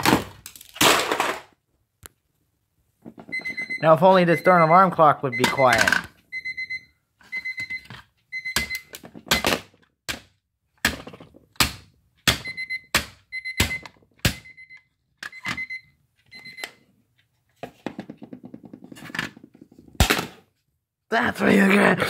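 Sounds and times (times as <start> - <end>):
alarm clock beeping: 3.3 - 9.6, 12.4 - 16.8.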